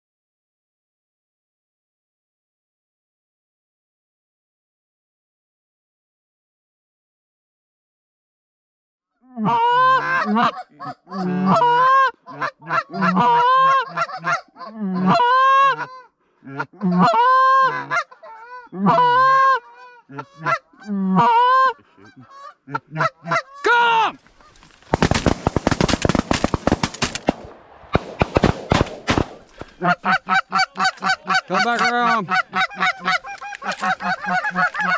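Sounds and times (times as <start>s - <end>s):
goose honking: 9.6s - 15.9s, 18.8s - 19.6s, 29.1s - 34.9s
rapid noisy crackle: 24.3s - 29.7s.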